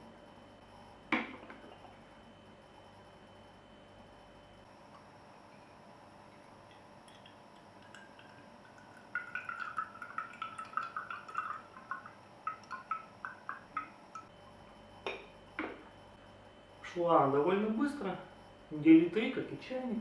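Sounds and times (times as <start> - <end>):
tea pouring into cup: 6.6 - 13.9.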